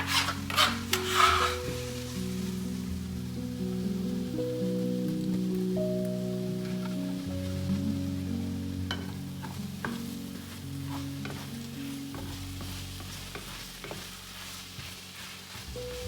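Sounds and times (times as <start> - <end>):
food sizzling in a frying pan: 0.0 - 16.0
soft background music: 0.0 - 16.0.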